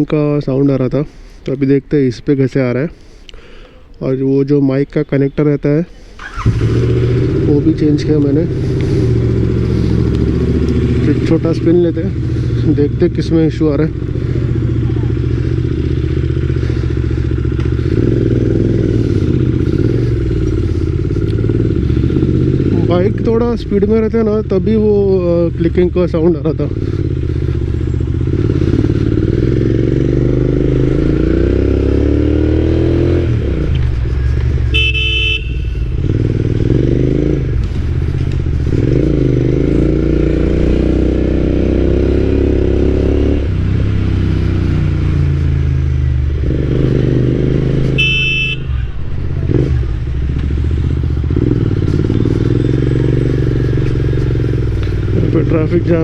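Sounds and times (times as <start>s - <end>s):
motorcycle engine accelerating: 6.2s - 56.0s
horn honking: 34.5s - 36.4s, 47.8s - 50.6s.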